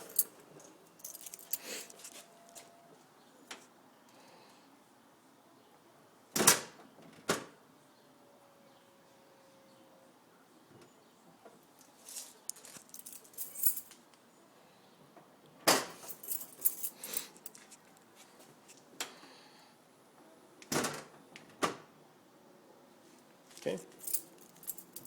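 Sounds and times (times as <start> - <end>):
hard objects clinking and rattling: 11.8 - 13.9, 24.0 - 25.0.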